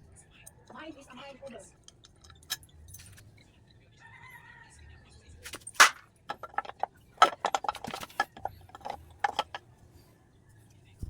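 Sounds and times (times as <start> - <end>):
metal parts clinking: 1.9 - 3.2, 5.5 - 9.6.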